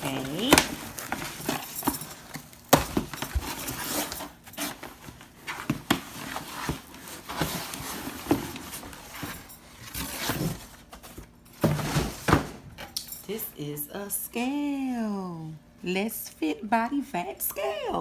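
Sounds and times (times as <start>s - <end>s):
packaging rustling: 0.0s - 12.5s.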